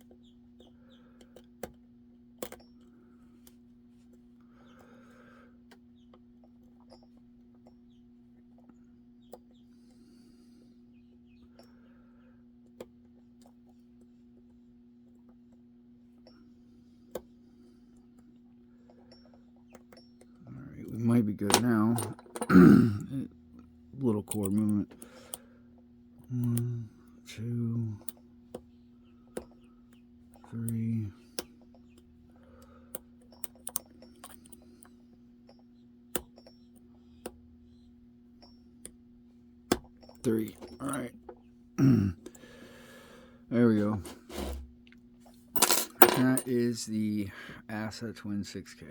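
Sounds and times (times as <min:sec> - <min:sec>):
steady low hum: 0:00.0 - 0:48.9
lock pick clicking and scratching: 0:24.2 - 0:25.3, 0:32.9 - 0:34.9.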